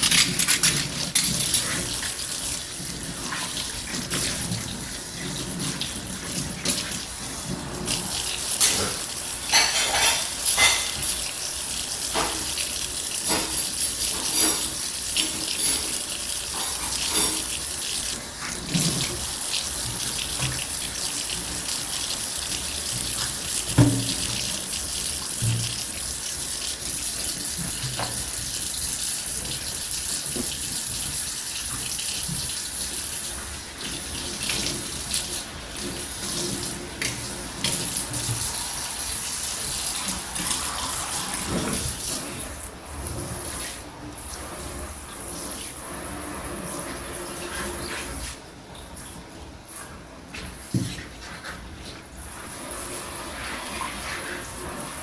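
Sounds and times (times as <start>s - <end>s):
tap water running into sink: 0.0s - 55.0s
dishes clinking and knocking: 8.6s - 11.2s, 12.1s - 12.6s, 13.2s - 17.6s, 23.7s - 24.5s.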